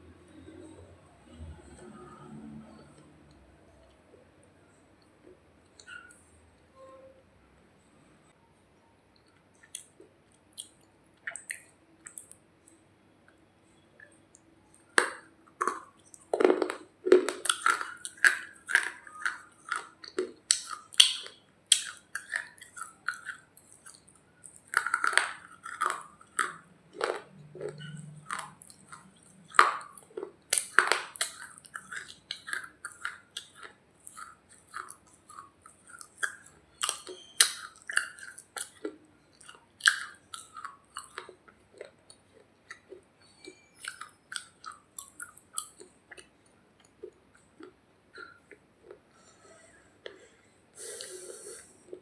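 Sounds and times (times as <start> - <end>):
chewing and crunching clay: 14.0 - 50.3.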